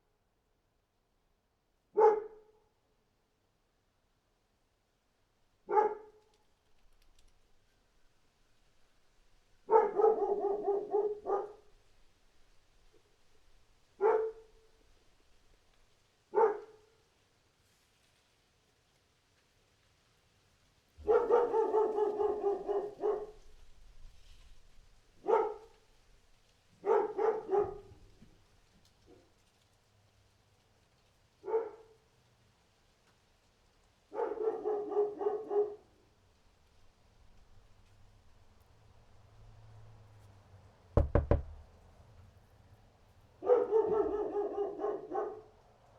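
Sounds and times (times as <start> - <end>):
dog barking: 1.9 - 2.6, 5.7 - 6.2, 9.6 - 11.7, 14.0 - 14.7, 16.3 - 17.0, 21.0 - 23.6, 25.2 - 25.8, 26.8 - 28.1, 31.4 - 32.1, 34.1 - 36.0, 43.4 - 45.6.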